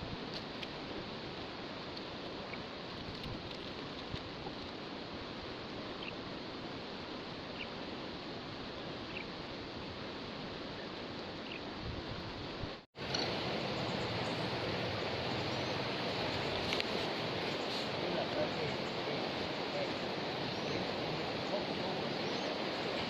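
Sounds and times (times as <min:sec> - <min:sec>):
river rushing: 0:12.4 - 0:23.0.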